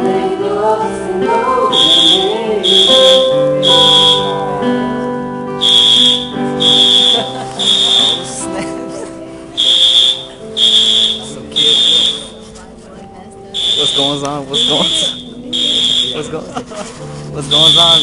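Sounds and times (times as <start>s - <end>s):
held music notes: 1.5s - 16.5s, 17.4s - 18.0s
fire alarm horn blasts: 1.7s - 4.4s, 5.6s - 8.3s, 9.6s - 12.3s, 13.6s - 16.2s, 17.5s - 18.0s.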